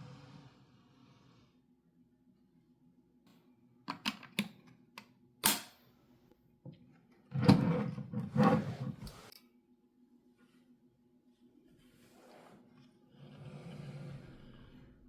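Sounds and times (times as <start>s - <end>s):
rustling and scraping: 11.4s - 15.0s.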